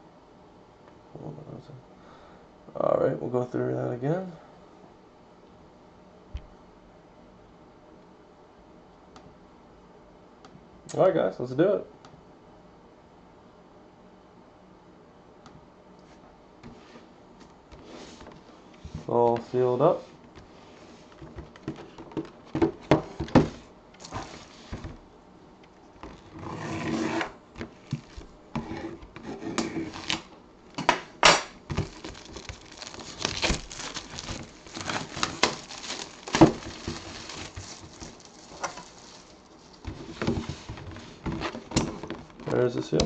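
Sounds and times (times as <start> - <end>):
cardboard box rubbing and tearing: 31.7 - 41.6.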